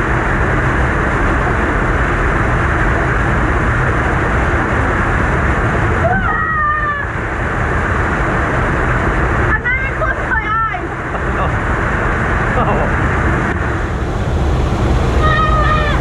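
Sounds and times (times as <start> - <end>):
waterfall rushing: 0.0 - 16.0
high wavering squeal: 15.0 - 16.0.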